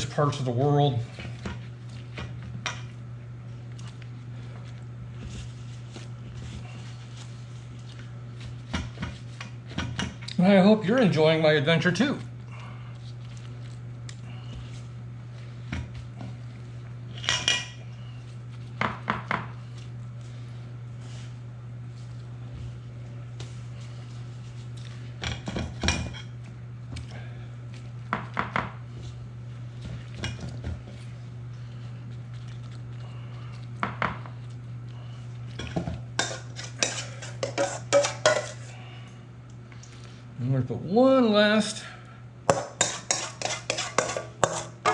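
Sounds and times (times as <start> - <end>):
steady low hum: 0.0 - 44.9
metal utensils clinking on dishes: 36.2 - 38.6
metal utensil scraping bowl: 36.2 - 38.7, 42.5 - 44.9.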